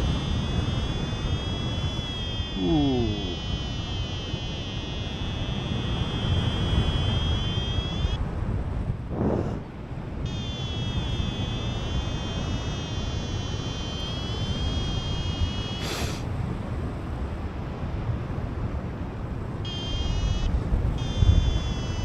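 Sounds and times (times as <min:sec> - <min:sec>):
variometer high electronic tone: 0:00.0 - 0:08.2, 0:10.2 - 0:16.2, 0:19.6 - 0:22.0
wind buffeting microphone: 0:00.0 - 0:22.0.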